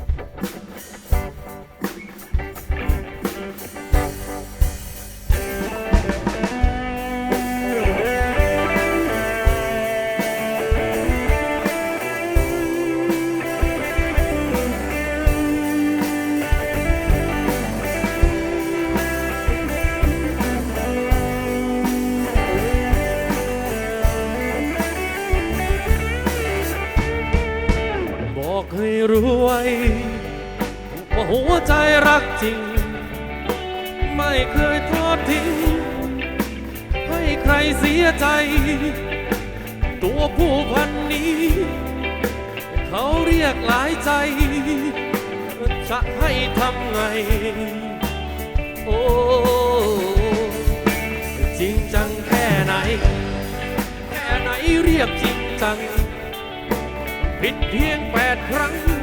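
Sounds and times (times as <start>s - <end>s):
bass guitar: 0.0s - 59.0s
drum kit playing: 0.0s - 59.0s
guitar lead with bending notes: 0.0s - 59.0s.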